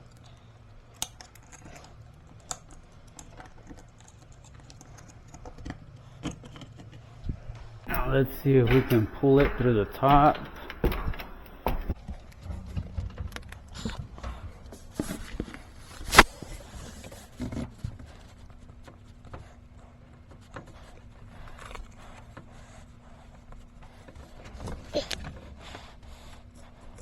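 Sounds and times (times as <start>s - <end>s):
clicks: 7.9s - 12.0s
dull thumps: 7.9s - 12.0s.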